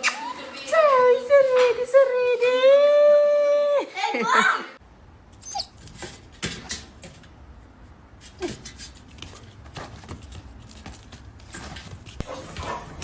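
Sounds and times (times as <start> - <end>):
dog whining: 5.4 - 5.8.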